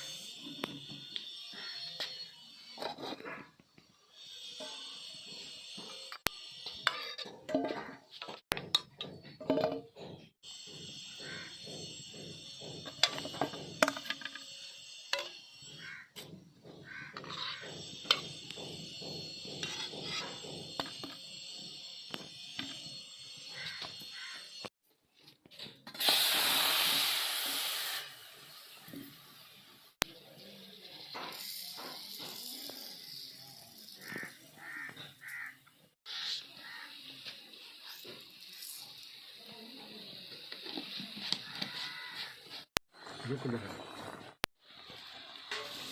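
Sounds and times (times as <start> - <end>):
crows cawing: 1.5 - 1.9, 11.2 - 11.6, 15.8 - 16.2, 16.8 - 17.7, 23.5 - 24.5, 34.0 - 37.1, 41.4 - 42.4
steady hiss: 26.0 - 34.2.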